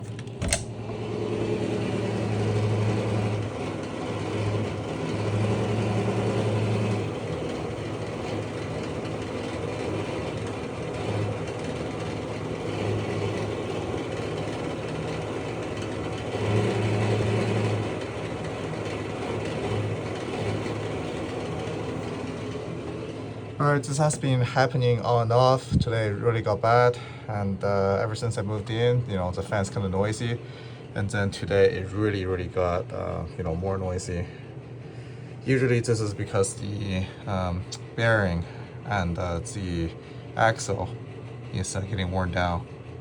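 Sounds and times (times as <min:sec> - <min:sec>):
fan droning hum: 0:00.0 - 0:43.0.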